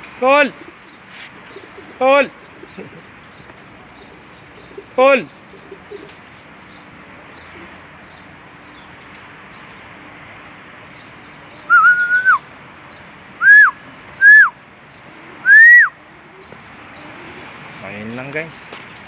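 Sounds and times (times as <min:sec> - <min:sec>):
faint bird chirping: 0:00.0 - 0:19.0
loud whistled calls: 0:09.8 - 0:18.1.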